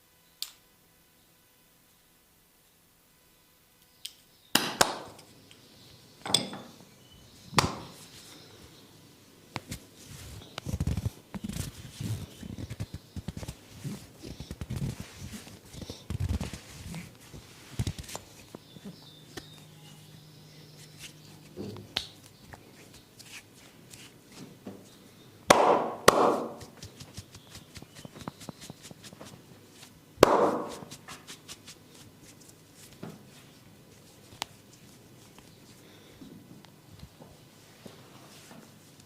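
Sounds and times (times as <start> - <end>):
hands slapping on skin: 25.5 - 33.0.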